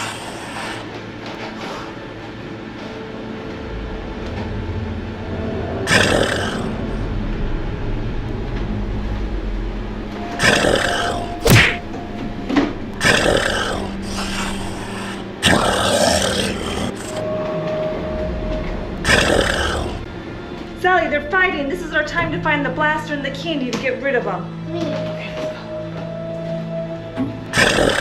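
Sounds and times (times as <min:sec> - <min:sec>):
sharp hit: 0:11.4 - 0:12.0.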